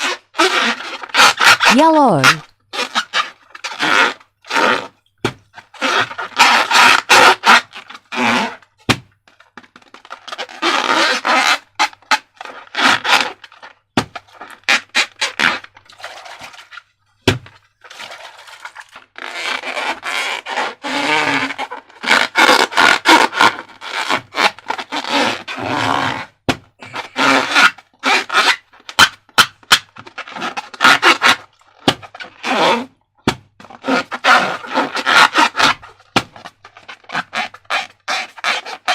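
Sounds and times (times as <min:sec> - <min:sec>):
slime scraping and stirring: 0:14.3 - 0:16.8, 0:17.8 - 0:20.9.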